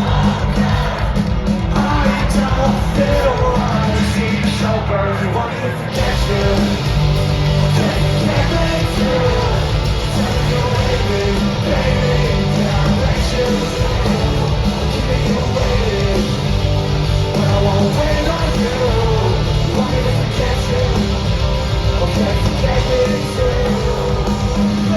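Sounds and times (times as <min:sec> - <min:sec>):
bass guitar: 0:00.0 - 0:24.9
drums: 0:00.0 - 0:24.9
electric guitars: 0:00.0 - 0:24.9
person singing: 0:21.8 - 0:24.9.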